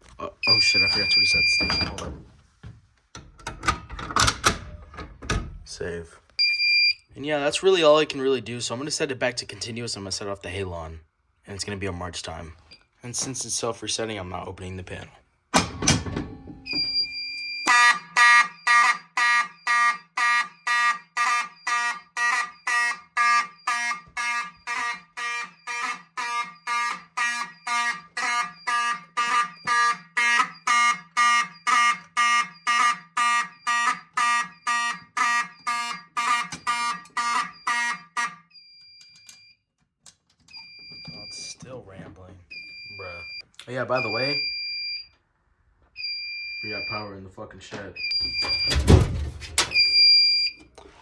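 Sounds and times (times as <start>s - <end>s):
fire alarm horn buzzing: 0.4s - 2.0s, 16.6s - 39.6s, 48.0s - 50.6s
alarm panel high beep: 0.4s - 2.1s, 6.4s - 7.0s, 16.7s - 39.6s, 46.0s - 47.1s, 48.0s - 49.1s.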